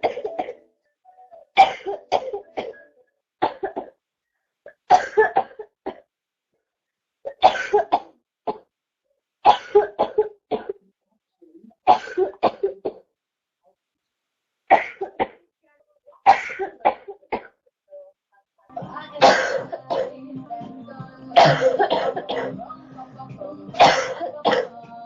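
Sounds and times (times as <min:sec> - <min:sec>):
girl coughing: 0:00.0 - 0:00.6, 0:01.6 - 0:02.8, 0:04.7 - 0:05.7, 0:07.3 - 0:08.1, 0:09.5 - 0:10.8, 0:11.9 - 0:13.0, 0:16.2 - 0:17.6, 0:19.2 - 0:20.1, 0:21.4 - 0:22.6, 0:23.8 - 0:24.7.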